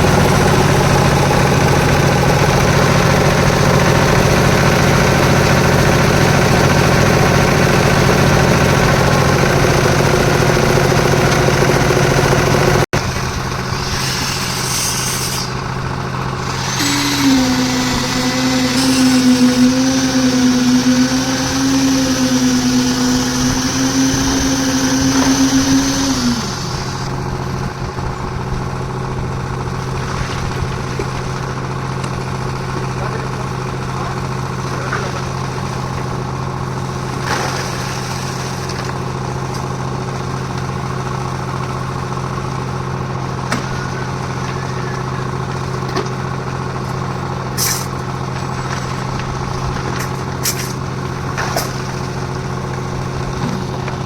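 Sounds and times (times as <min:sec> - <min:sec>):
loud wavering hum: 0:00.0 - 0:29.6
concrete mixer engine running: 0:00.0 - 0:54.0.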